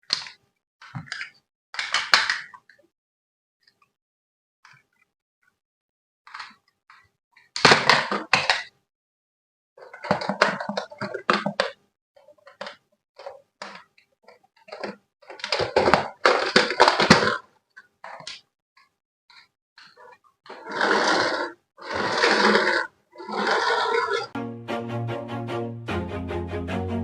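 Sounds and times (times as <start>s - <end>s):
toy packaging rustling and clattering: 9.8s - 18.4s.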